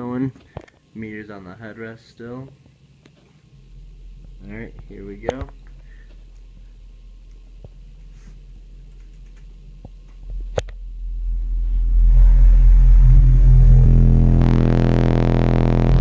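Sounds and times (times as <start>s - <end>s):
subwoofer bass tone: 3.5s - 16.0s.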